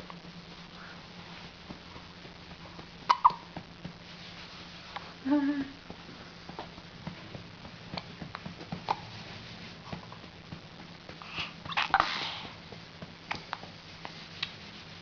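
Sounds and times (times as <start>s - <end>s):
baby hiccuping and snuffling: 3.1s - 3.5s.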